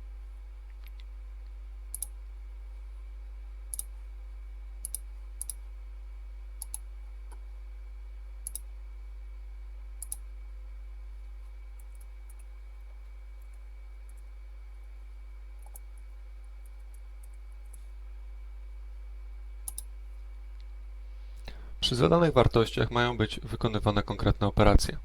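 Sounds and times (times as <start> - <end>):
steady low hum: 0.0 - 25.0
computer mouse clicking: 1.9 - 2.2, 3.7 - 3.9, 4.8 - 5.6, 6.6 - 7.4, 8.4 - 8.7, 10.0 - 10.2, 11.8 - 12.5, 15.6 - 17.8, 19.6 - 19.9.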